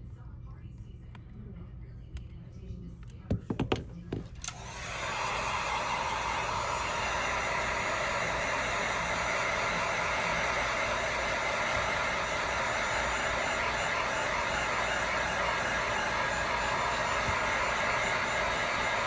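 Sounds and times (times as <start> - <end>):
fan blowing: 3.9 - 19.0.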